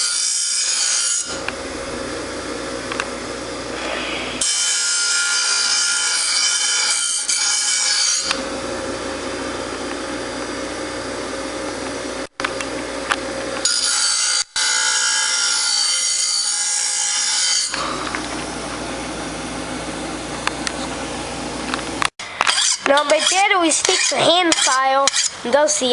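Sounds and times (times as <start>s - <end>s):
grinder motor humming: 0.0s - 15.0s, 17.1s - 24.5s
blade grinding on wheel: 22.4s - 25.4s.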